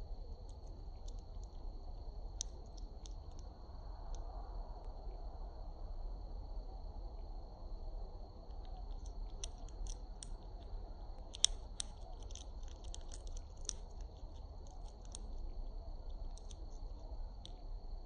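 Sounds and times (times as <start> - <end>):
bird cracking seed shells: 8.6 - 15.5, 16.1 - 16.8.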